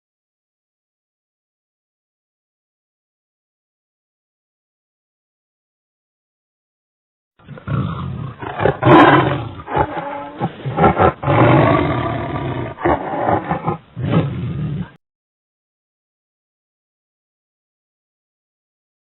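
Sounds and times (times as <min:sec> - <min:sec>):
large animal roaring: 0:07.4 - 0:15.0.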